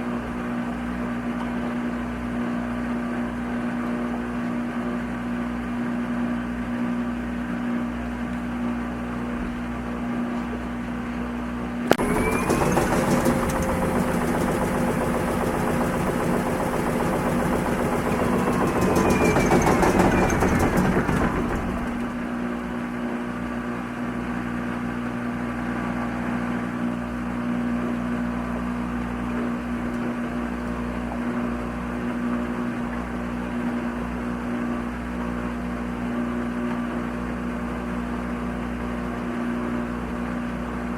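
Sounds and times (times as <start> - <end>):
washing machine hum: 0.0 - 40.9
motor whine: 11.9 - 22.5.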